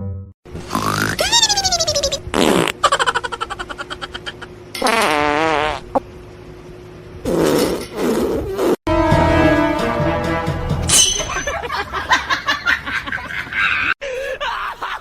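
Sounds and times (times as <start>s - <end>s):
fart sounds: 0.6s - 1.3s, 2.3s - 2.8s, 4.8s - 6.0s, 7.2s - 8.8s.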